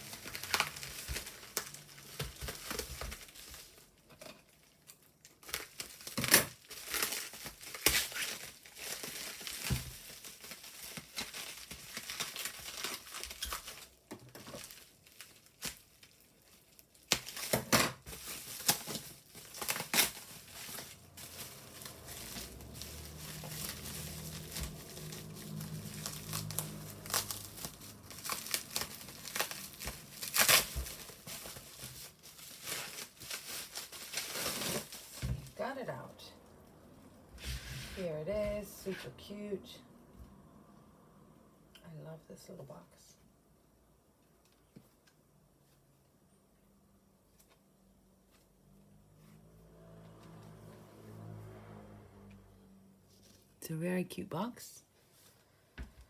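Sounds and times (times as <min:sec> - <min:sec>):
packaging crinkling and tearing: 0:00.0 - 0:35.6.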